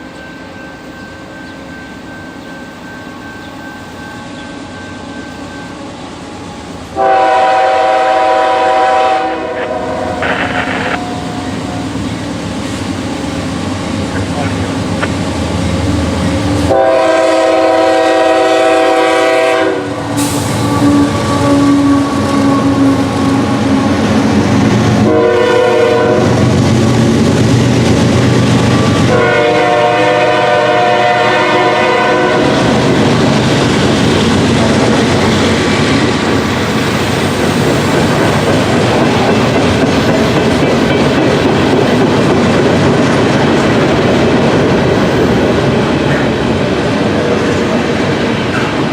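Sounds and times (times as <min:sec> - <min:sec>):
train wheels on rails: 0:00.0 - 0:48.9
train horn blasts: 0:06.9 - 0:12.0, 0:16.6 - 0:24.0, 0:25.0 - 0:26.4, 0:29.0 - 0:32.8.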